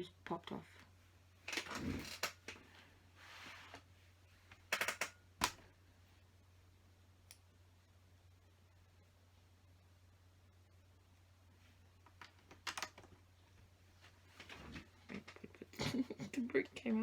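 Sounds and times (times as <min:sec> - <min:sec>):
plastic bricks clicking together: 0:04.7 - 0:05.6.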